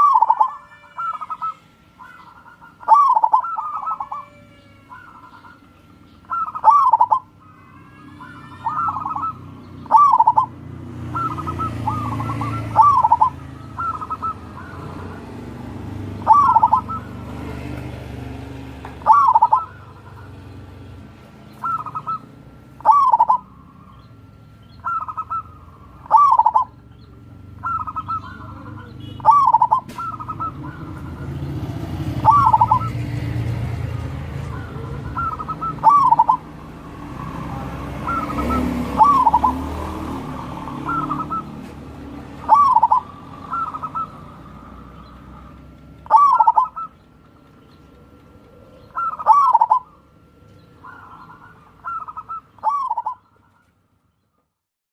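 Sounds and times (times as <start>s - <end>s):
dove cooing: 0.0s - 53.7s.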